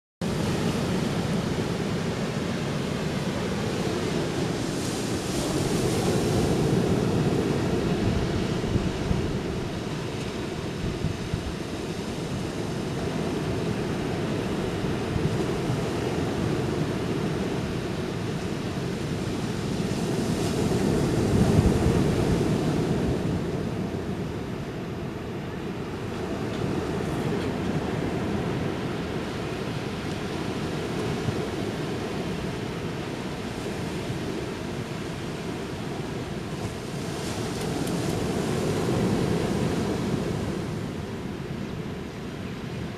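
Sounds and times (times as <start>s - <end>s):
ocean surf on a beach: 0.2s - 42.9s
wind rumble on microphone: 0.2s - 42.9s.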